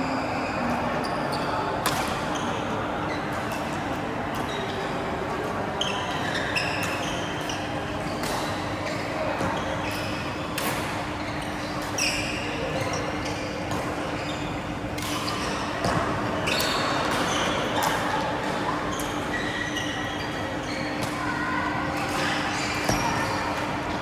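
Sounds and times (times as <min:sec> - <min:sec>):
shoe squeaks on court floor: 0:05.8 - 0:18.2, 0:18.8 - 0:23.7.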